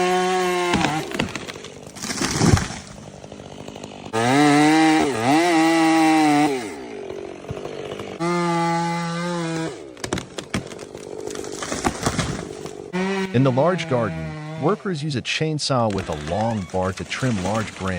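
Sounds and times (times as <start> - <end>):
wood cracking: 0.0 - 13.7, 15.8 - 17.9
chainsaw cutting wood: 0.0 - 14.9, 15.8 - 17.9.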